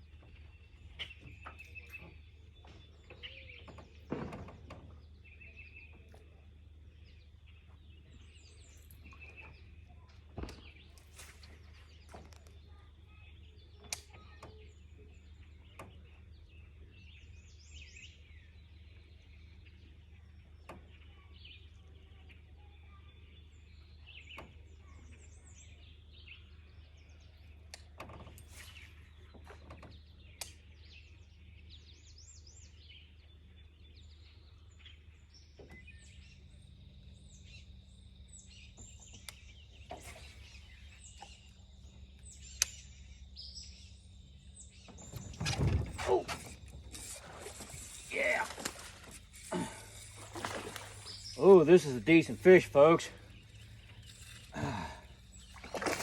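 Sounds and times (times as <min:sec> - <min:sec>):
birds chirping: 0:00.0 - 0:56.0
steady low hum: 0:30.2 - 0:56.0.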